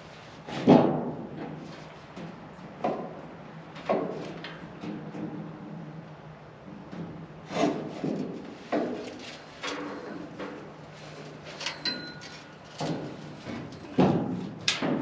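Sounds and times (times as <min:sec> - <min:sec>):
scrapes and knocks of parts handled: 0:07.6 - 0:15.0.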